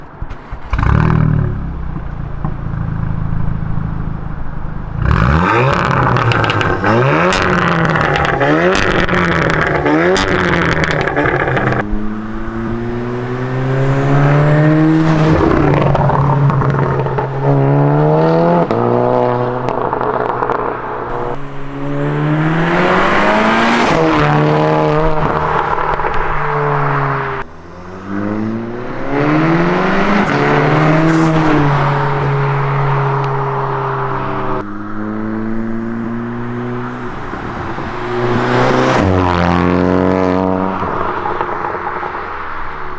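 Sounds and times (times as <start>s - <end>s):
car engine revving and accelerating: 0.0s - 1.9s, 4.9s - 42.9s
exhaust pops and crackles: 0.0s - 11.9s, 24.9s - 27.5s.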